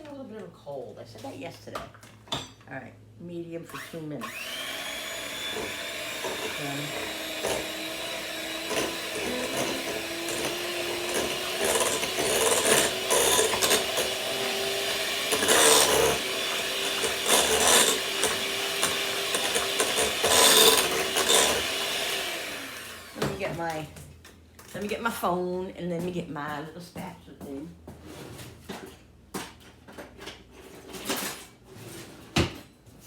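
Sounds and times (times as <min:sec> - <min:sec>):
electric mixer motor whine: 0:03.8 - 0:23.6
beaters scraping in bowl: 0:05.0 - 0:22.3.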